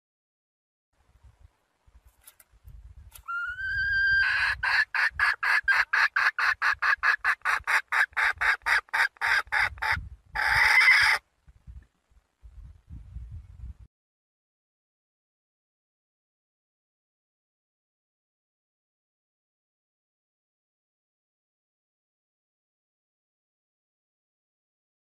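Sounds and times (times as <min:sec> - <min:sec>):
junglefowl hen calling: 0:03.2 - 0:11.2
junglefowl hen clucking: 0:03.2 - 0:11.2.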